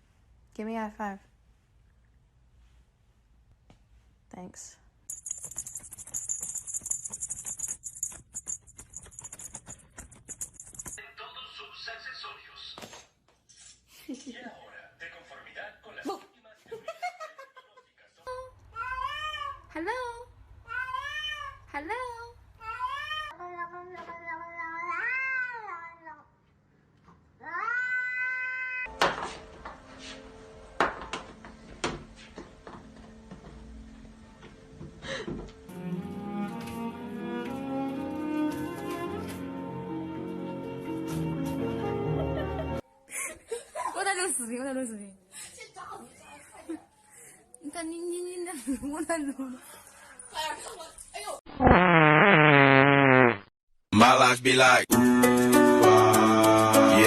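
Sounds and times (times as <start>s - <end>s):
shaker rattling: 5.1s - 11.0s
cat meowing: 27.4s - 28.9s.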